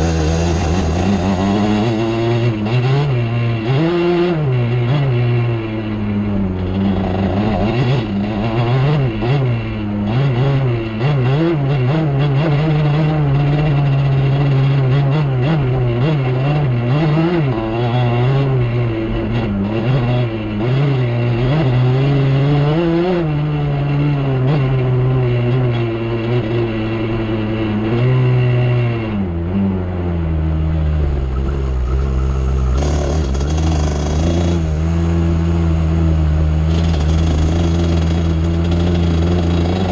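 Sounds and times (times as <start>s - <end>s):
atv engine revving: 0.0s - 39.9s.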